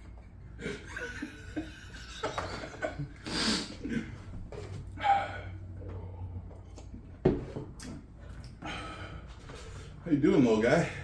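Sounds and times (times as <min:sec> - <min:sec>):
low room hum: 0:00.0 - 0:11.0
person sniffing: 0:03.2 - 0:03.8.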